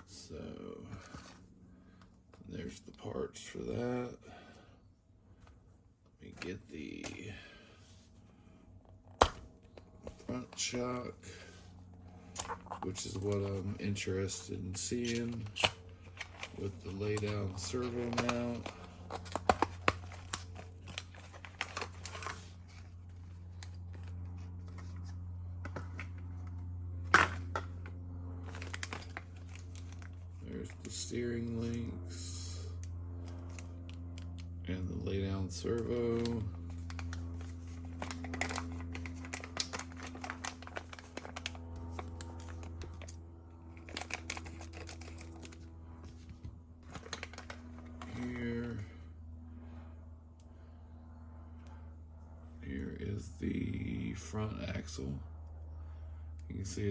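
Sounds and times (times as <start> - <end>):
steady low hum: 0.0 - 56.9
plastic parts clicking and rustling: 35.8 - 43.2, 43.8 - 45.6, 46.8 - 48.4.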